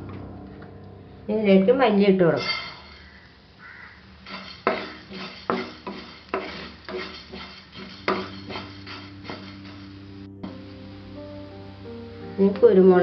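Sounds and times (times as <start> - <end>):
spatula scraping metal pan: 2.4 - 3.2, 4.2 - 10.0.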